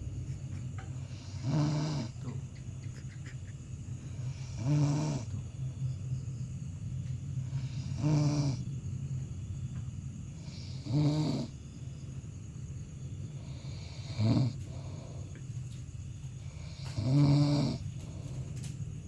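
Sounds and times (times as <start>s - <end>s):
steady low hum: 0.0s - 19.0s
man snoring: 1.1s - 2.2s, 4.2s - 5.4s, 7.5s - 8.6s, 10.4s - 11.5s, 13.4s - 15.0s, 16.6s - 17.8s.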